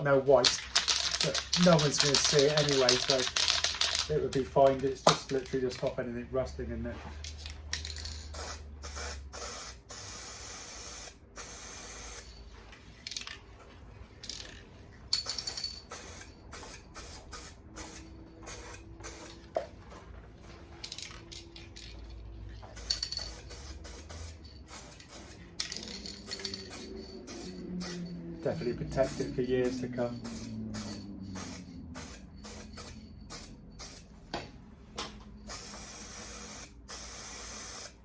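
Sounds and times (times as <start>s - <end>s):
aerosol spray can hissing: 29.0s - 34.0s, 35.5s - 38.0s.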